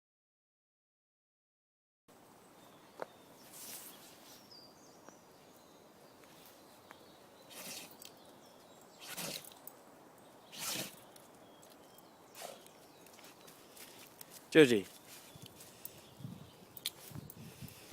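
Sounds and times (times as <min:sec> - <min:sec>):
dog sneezing: 0:12.4 - 0:12.6.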